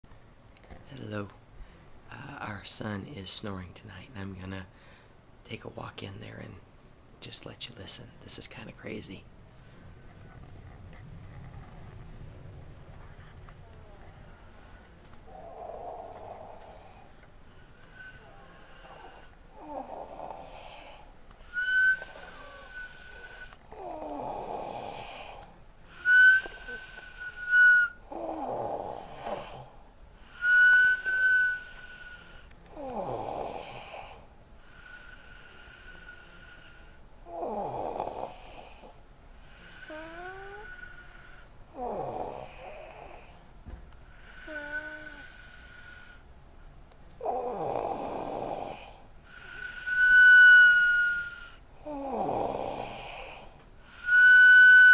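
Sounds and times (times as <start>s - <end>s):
rasping snores: 14.3s - 43.4s, 44.1s - 46.2s, 47.2s - 54.9s
high-pitched nasal whistle: 21.4s - 23.6s, 25.9s - 28.1s, 30.3s - 32.3s, 39.9s - 40.6s, 49.4s - 51.6s, 53.9s - 54.9s.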